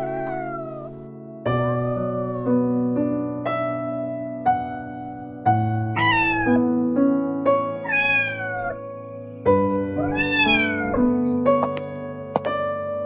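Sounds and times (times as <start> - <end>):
cat meowing: 0.0 - 1.0, 1.7 - 2.6, 6.0 - 6.7, 7.8 - 8.8, 10.0 - 11.1
slow piano music: 0.0 - 13.0.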